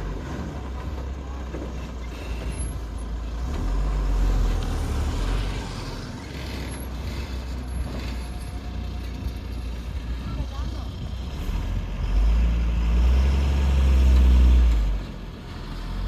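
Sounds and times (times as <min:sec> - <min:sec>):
diesel engine running under load: 0:00.0 - 0:16.0.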